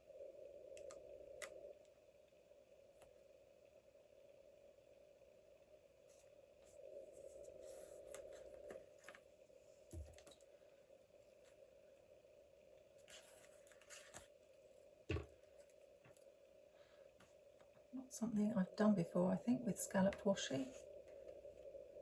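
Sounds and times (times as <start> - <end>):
low steady hum: 0.0 - 22.0
paper and tape rustling: 13.0 - 14.3.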